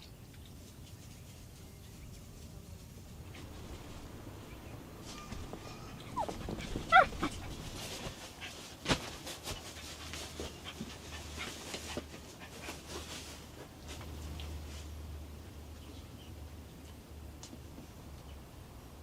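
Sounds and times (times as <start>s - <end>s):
dog whining: 5.1s - 8.0s
dog panting: 5.3s - 8.7s.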